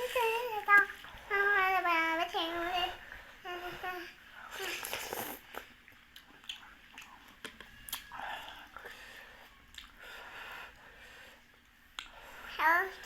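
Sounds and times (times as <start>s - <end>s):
high voice singing wordless tune: 0.0s - 4.1s.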